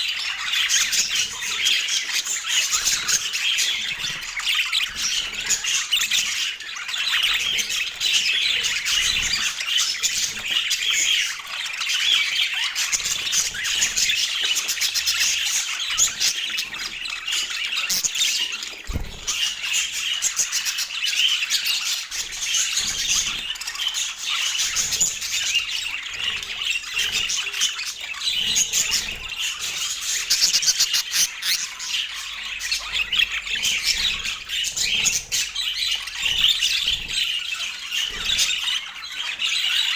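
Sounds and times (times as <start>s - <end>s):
budgerigar chattering: 26.9s - 38.9s.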